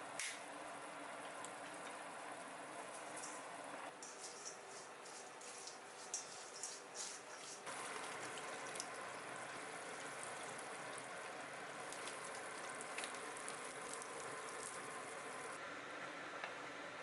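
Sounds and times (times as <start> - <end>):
food sizzling: 4.4 - 15.6.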